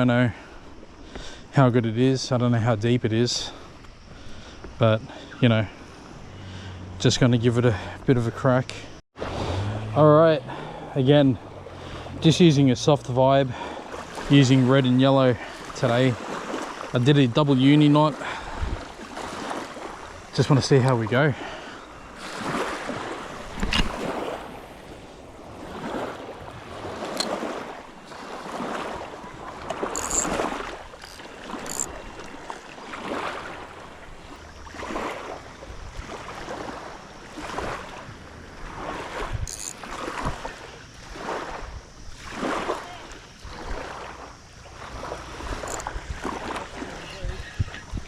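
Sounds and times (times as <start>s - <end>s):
small waves washing on shore: 2.3s - 48.0s
wind on microphone: 18.4s - 20.3s, 45.3s - 48.0s.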